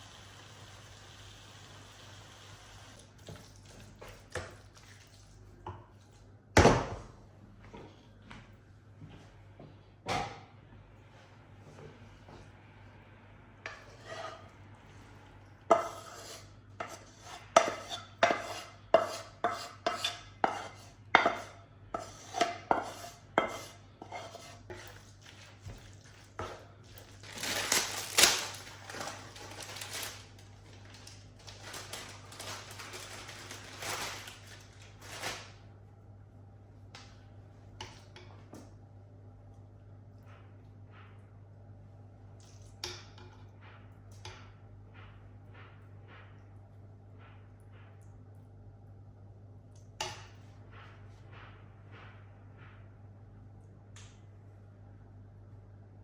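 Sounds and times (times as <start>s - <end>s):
utensil scraping: 13.7s - 14.6s, 15.7s - 25.6s.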